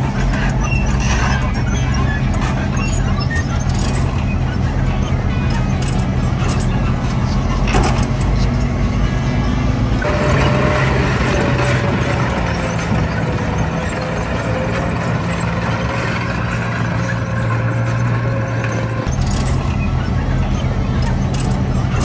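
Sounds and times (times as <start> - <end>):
heavy vehicle engine running: 0.0 - 22.0
thin whine: 1.6 - 13.9.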